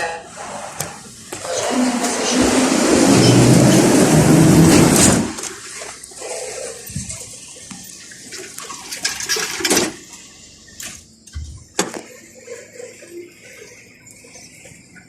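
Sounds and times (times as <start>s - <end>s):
tram cabin rushing and rattling: 1.4s - 5.4s.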